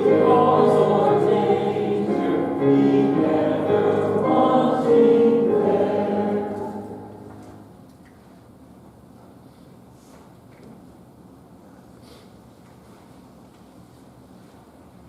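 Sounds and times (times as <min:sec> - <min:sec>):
voices singing a hymn: 0:00.0 - 0:07.7.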